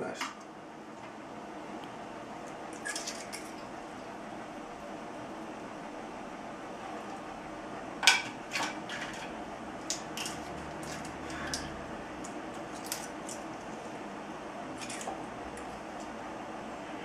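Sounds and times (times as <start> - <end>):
steady background noise: 0.0 - 17.0.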